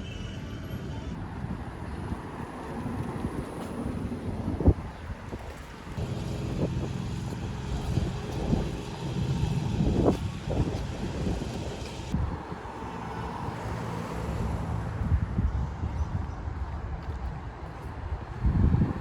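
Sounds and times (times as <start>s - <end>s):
outdoor noise: 0.0s - 19.0s
low engine hum: 0.1s - 19.0s.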